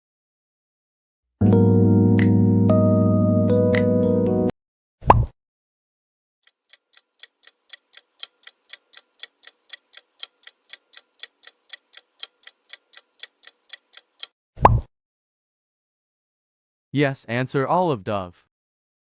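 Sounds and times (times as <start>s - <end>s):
timer ticking: 6.5s - 14.3s.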